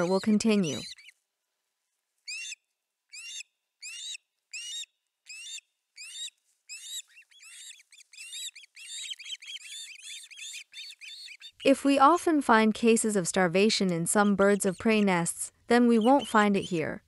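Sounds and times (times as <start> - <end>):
osprey whistled chirps: 3.2 - 11.7, 15.9 - 17.0.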